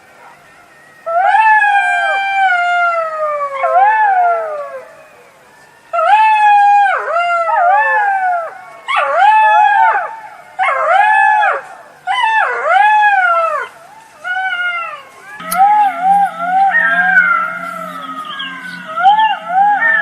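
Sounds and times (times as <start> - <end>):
jackal howling: 1.0 - 5.0, 10.7 - 20.0.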